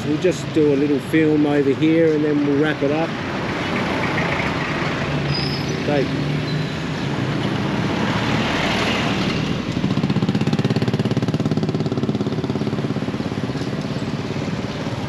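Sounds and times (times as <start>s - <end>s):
street traffic: 0.0s - 15.0s.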